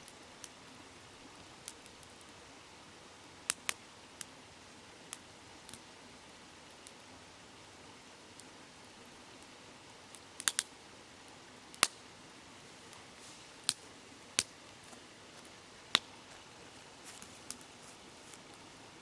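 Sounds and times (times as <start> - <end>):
babbling river: 0.0 - 19.0
campfire crackling: 0.0 - 19.0.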